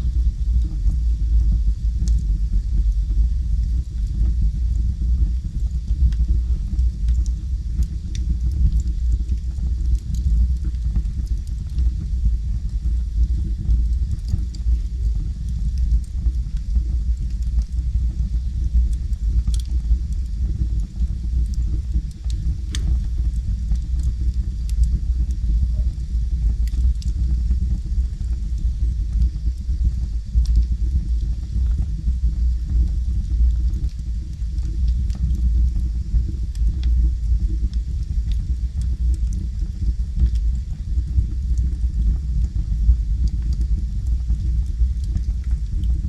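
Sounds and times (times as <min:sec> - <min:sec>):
logs burning in fireplace: 0:00.0 - 0:46.0.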